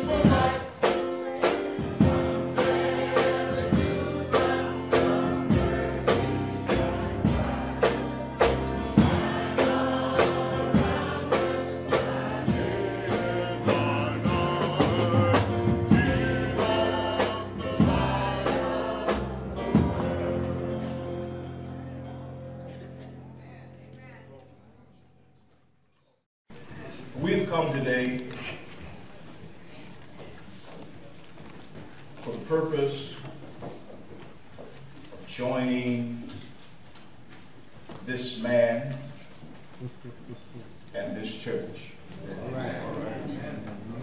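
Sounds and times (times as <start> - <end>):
band with drum kit: 0.0 - 22.6
gospel choir singing: 0.0 - 23.3.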